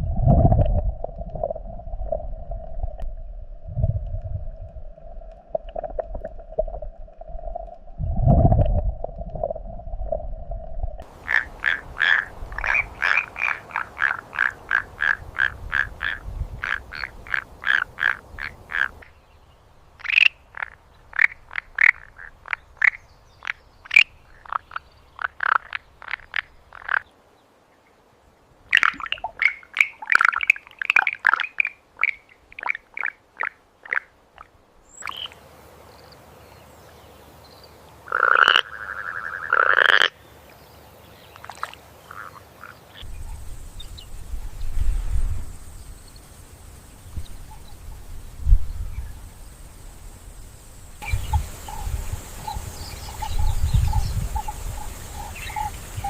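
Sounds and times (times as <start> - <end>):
frogs croaking: 11.0 - 19.2, 19.9 - 27.1, 28.7 - 36.3, 37.4 - 40.6, 41.3 - 44.6, 45.4 - 56.0.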